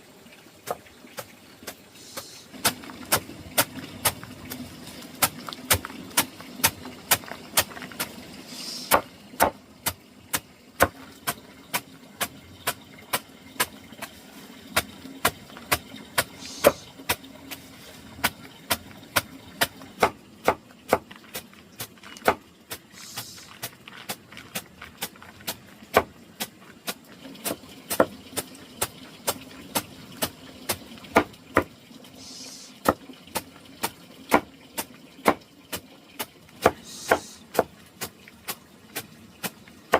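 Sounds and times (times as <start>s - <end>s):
sharp hand tool strikes: 14.8s - 16.8s, 36.6s - 38.1s.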